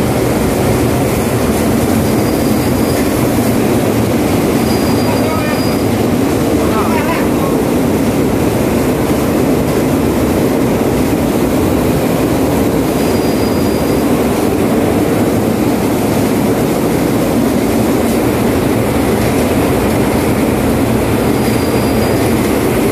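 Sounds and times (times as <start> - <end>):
moving vehicle noise: 0.0 - 22.9
faint high squeal: 4.6 - 5.9, 13.0 - 14.1, 21.5 - 22.3.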